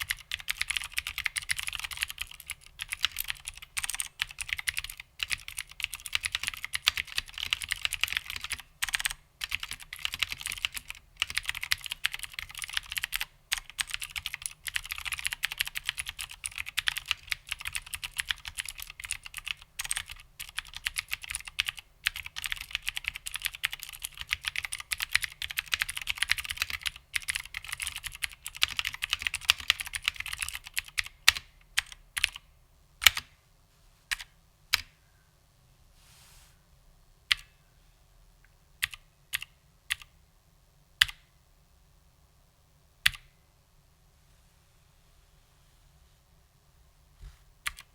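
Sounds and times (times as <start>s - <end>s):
clicky keyboard typing: 0.0s - 32.4s, 38.8s - 40.1s, 47.7s - 47.9s.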